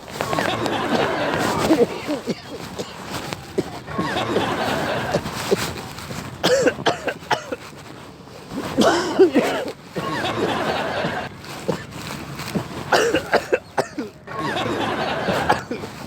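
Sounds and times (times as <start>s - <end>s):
man coughing: 0.9s - 5.8s, 6.4s - 7.6s, 8.6s - 11.9s, 12.9s - 14.7s, 15.4s - 15.9s.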